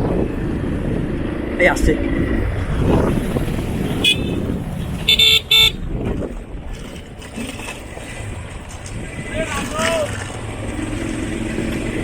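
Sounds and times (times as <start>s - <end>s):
moving vehicle rumble: 0.0s - 12.0s
vehicle horn beeps: 4.0s - 5.8s.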